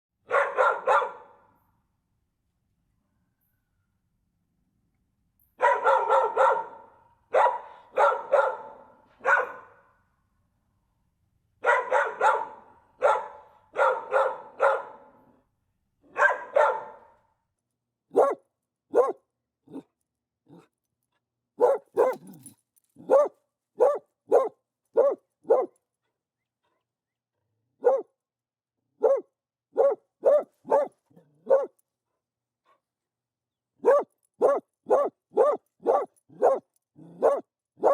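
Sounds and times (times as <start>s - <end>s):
dogs barking: 0.3s - 1.4s, 5.6s - 9.8s, 11.6s - 15.2s, 16.1s - 17.1s, 18.1s - 19.9s, 21.6s - 25.8s, 27.8s - 28.1s, 29.0s - 31.8s, 33.8s - 37.9s.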